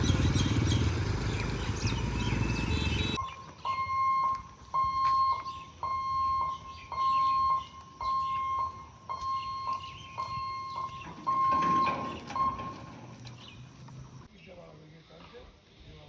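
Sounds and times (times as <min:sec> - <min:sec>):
level crossing warning beeps: 0:02.7 - 0:13.1.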